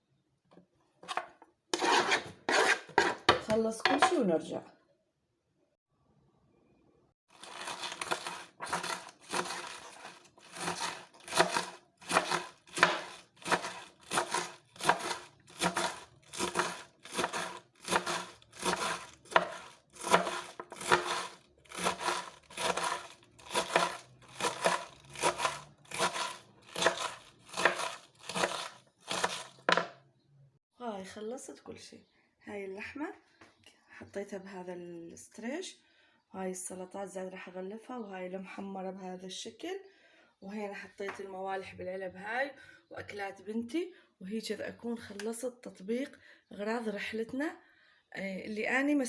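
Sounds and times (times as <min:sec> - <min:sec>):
knife cutting vegetables: 0:01.1 - 0:03.3, 0:07.5 - 0:29.8.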